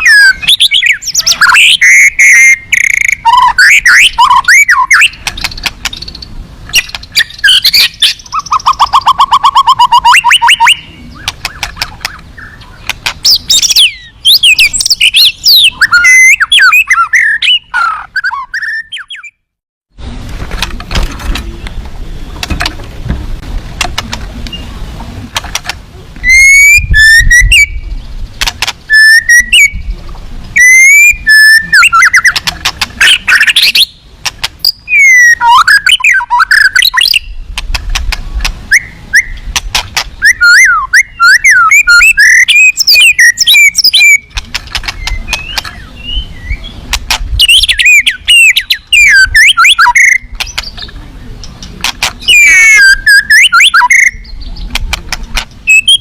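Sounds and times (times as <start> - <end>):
bird singing whistles and chatter: 0.0 - 19.4, 26.2 - 27.9, 28.9 - 29.9, 30.6 - 32.4, 33.0 - 34.0, 34.6 - 37.4, 38.7 - 39.5, 40.2 - 46.8, 47.4 - 51.6, 52.2 - 54.8, 55.6 - 56.0
sharp clicks: 5.2 - 7.1, 28.4 - 28.8, 34.2 - 34.8, 44.0 - 45.8.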